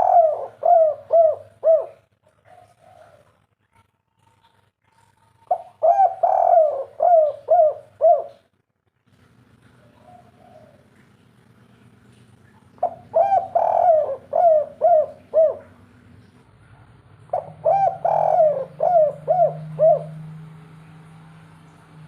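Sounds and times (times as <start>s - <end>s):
dove cooing: 0.0s - 3.4s, 5.4s - 8.5s, 9.7s - 11.5s, 12.5s - 16.0s, 17.3s - 20.9s.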